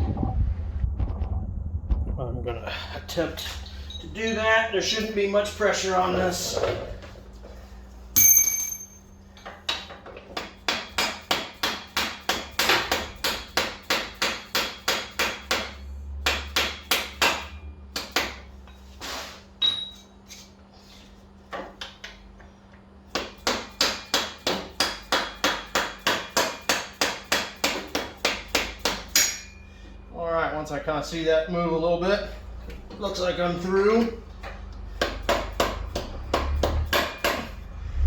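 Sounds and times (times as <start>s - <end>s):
hammer striking metal punch: 8.2s - 9.1s, 9.7s - 18.5s, 23.1s - 29.6s, 35.0s - 37.6s.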